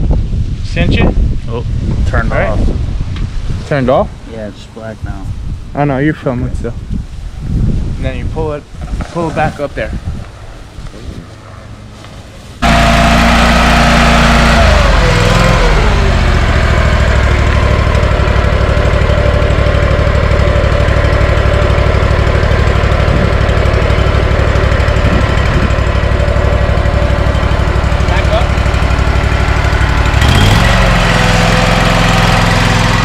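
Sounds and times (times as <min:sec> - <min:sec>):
engine running loudly: 0:12.6 - 0:33.0.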